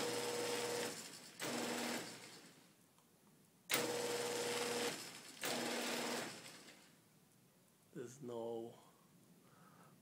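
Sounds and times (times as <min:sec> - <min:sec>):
garage door opener motor humming: 0:00.0 - 0:02.5, 0:03.7 - 0:06.9.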